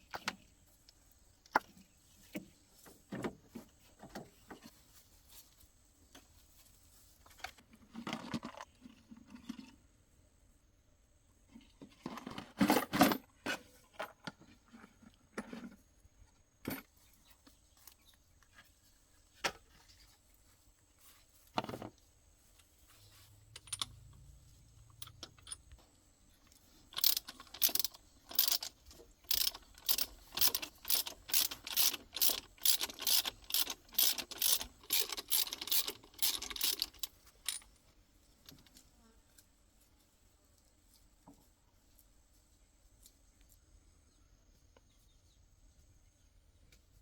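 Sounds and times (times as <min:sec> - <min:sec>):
rattling metal clicks of hand tool: 0:23.5 - 0:25.8, 0:26.9 - 0:37.8.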